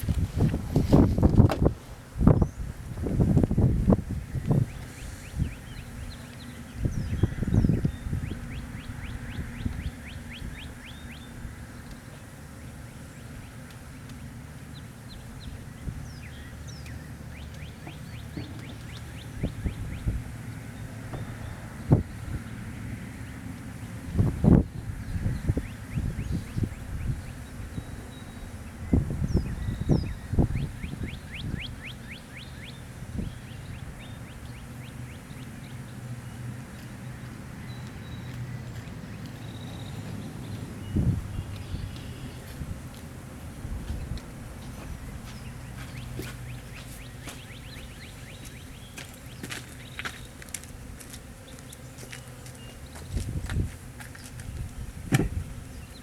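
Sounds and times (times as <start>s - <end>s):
songbird singing: 0.0s - 56.0s
steady low hum: 0.0s - 56.0s
songbird whistling: 27.8s - 32.8s.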